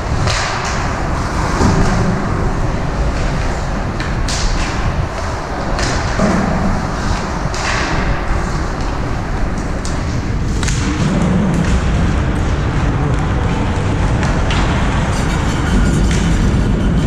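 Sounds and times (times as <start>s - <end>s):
low rumble: 0.0s - 17.0s
skates scraping ice: 0.0s - 17.0s
hockey sticks and puck knocking: 0.1s - 2.4s, 3.1s - 16.8s.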